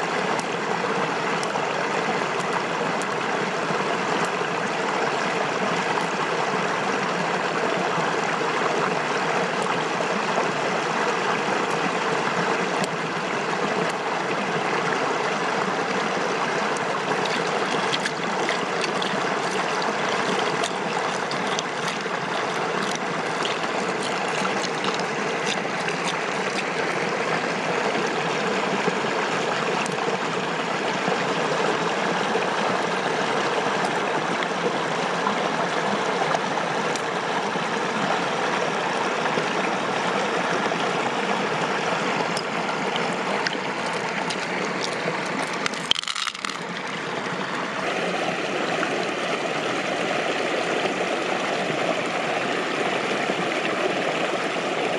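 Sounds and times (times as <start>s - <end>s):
flowing water rushing: 0.0s - 54.9s
small clicks and knocks: 43.4s - 46.9s.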